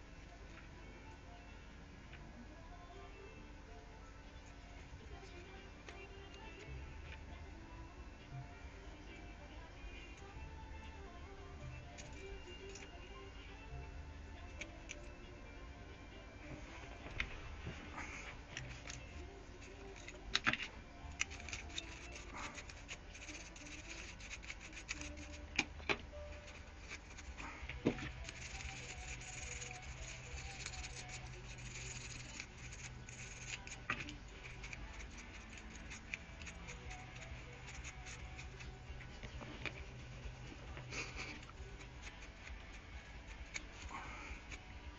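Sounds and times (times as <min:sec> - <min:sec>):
steady low hum: 0:00.0 - 0:44.9
small hard parts clicking and scraping: 0:18.2 - 0:44.9.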